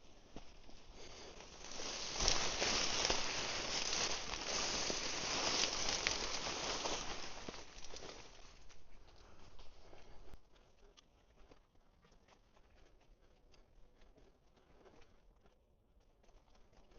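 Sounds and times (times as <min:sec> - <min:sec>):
dry grass rustling and crackling: 0:00.0 - 0:10.4.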